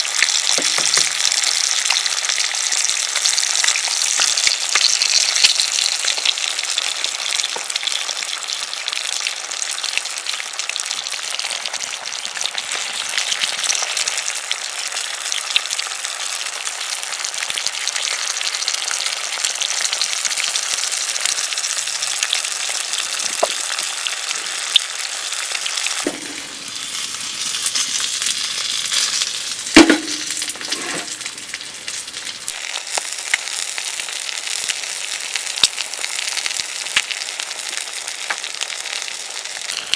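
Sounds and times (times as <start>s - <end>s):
food sizzling in a hot pan: 0.0s - 39.9s
sharp knock: 26.1s - 26.6s, 29.8s - 31.2s.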